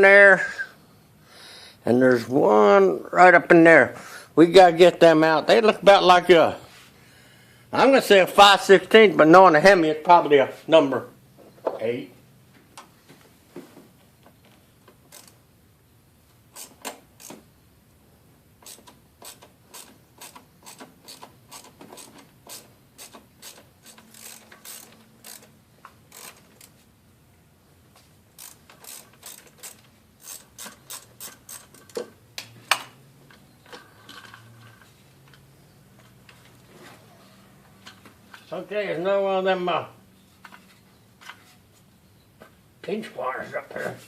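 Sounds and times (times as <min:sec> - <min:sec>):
ratchet wrench clicking: 0:15.1 - 0:15.4, 0:16.5 - 0:17.4, 0:18.6 - 0:26.7, 0:28.4 - 0:32.0.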